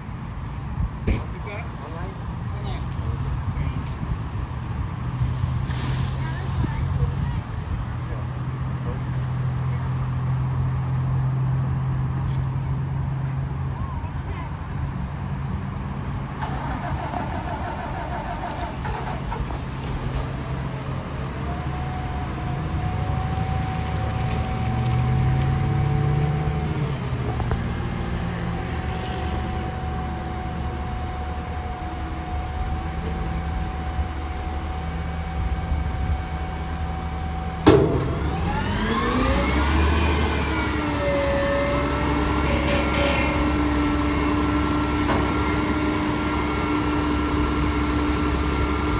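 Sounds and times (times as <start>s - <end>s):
garbage truck engine running: 16.4s - 48.9s
hydraulic whine: 16.4s - 48.9s
sharp bang: 37.6s - 39.5s.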